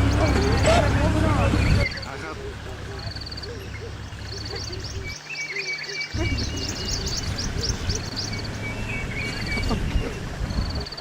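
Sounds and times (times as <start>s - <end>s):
birds chirping and trilling: 0.0s - 11.0s
lower repeated bird calls: 0.0s - 11.0s.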